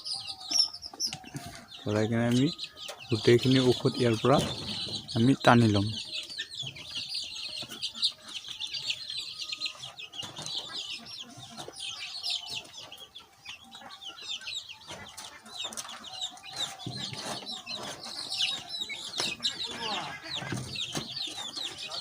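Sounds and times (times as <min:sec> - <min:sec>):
chicks peeping: 0:00.0 - 0:22.0.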